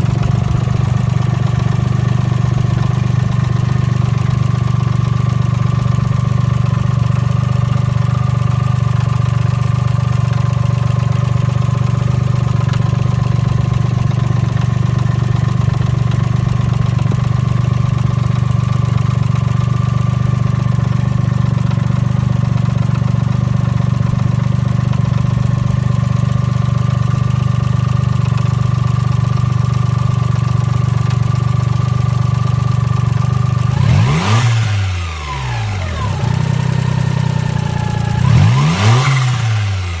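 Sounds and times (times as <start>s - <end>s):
car engine idling: 0.0s - 40.0s
engine revving: 33.6s - 40.0s.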